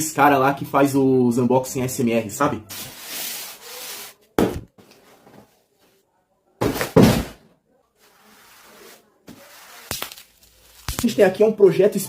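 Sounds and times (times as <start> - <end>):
knock and thud: 6.6 - 7.4.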